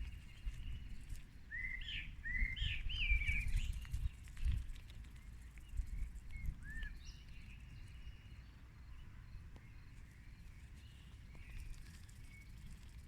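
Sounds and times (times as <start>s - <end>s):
distant songbirds chirping: 0.0s - 4.2s, 5.1s - 13.0s.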